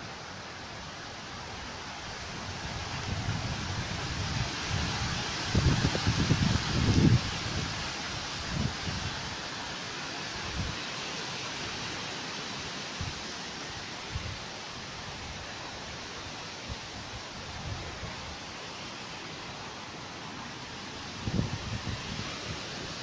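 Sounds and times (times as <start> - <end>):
rushing outdoor noise: 0.0 - 23.0
wind buffeting microphone: 2.6 - 7.8, 21.2 - 22.7.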